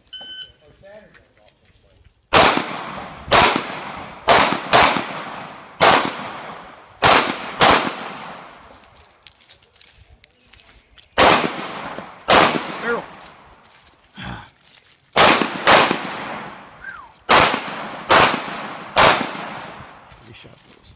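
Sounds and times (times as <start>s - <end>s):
gunshots with ringing echo: 2.3s - 8.7s, 11.2s - 13.2s, 15.2s - 20.0s.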